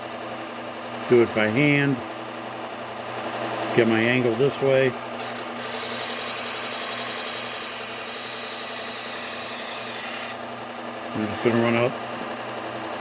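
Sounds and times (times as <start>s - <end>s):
knife grinding on belt sander: 5.2s - 10.5s
belt sander motor hum: 5.2s - 10.6s.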